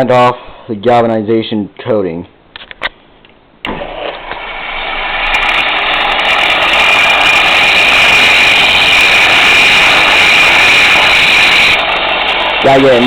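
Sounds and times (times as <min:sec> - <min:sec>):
bench grinder grinding metal: 0:04.4 - 0:13.0.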